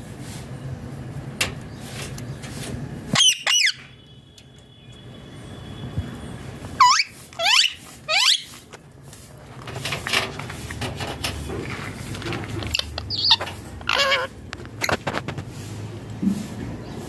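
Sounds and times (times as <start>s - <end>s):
parrot squawking: 3.2s - 3.9s, 6.8s - 8.6s, 12.6s - 14.4s
scratchy rustling and clicking: 7.9s - 15.6s.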